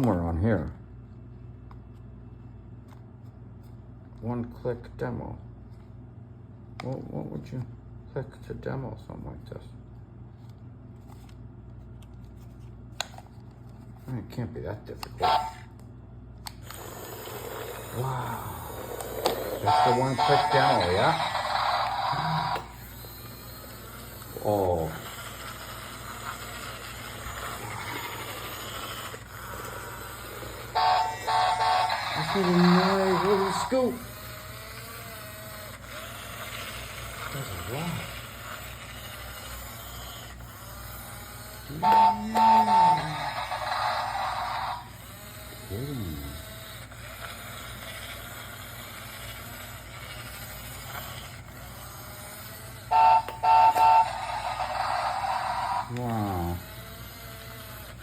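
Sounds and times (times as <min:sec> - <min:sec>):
toy excavator motor running: 0:15.0 - 0:15.8, 0:16.4 - 0:58.0.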